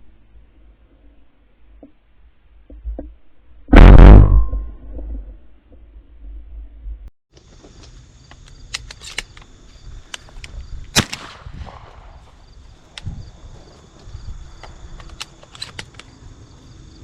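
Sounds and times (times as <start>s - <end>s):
crickets chirping: 7.3s - 17.0s
sharp clicks: 7.8s - 9.5s, 10.1s - 11.9s, 14.6s - 16.1s
loud sharp crack: 11.0s - 12.4s.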